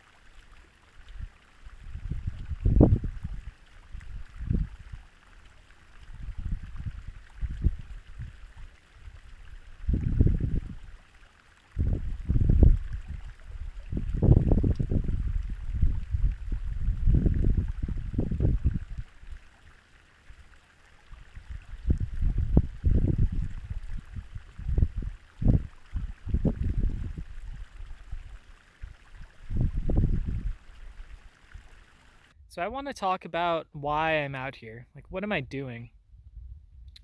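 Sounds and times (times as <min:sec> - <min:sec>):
wind buffeting microphone: 0:01.1 - 0:05.0, 0:06.1 - 0:11.0, 0:11.8 - 0:19.0, 0:21.4 - 0:28.4, 0:29.2 - 0:31.1, 0:36.1 - 0:37.0.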